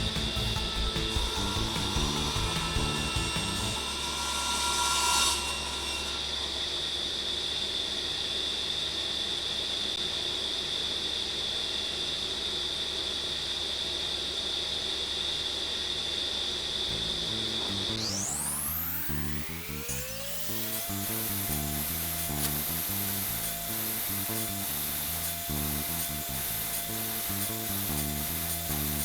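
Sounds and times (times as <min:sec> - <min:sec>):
saw cutting through wood: 0:00.0 - 0:07.1, 0:16.9 - 0:29.0
table saw whining: 0:00.0 - 0:07.7, 0:16.9 - 0:29.0.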